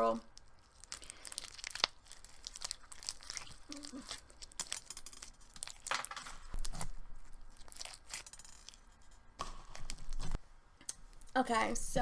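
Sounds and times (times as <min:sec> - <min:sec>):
slime with beads squeezed in hands: 0:00.4 - 0:05.9.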